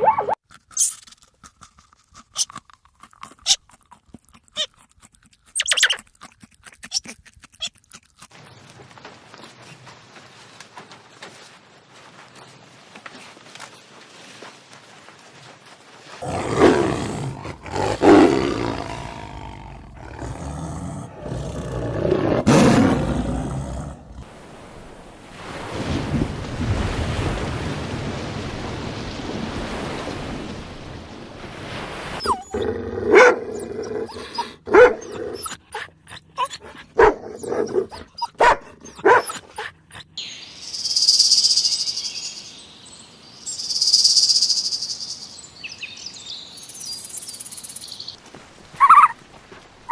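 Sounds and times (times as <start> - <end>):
deep animal roars: 16.2 - 24.3.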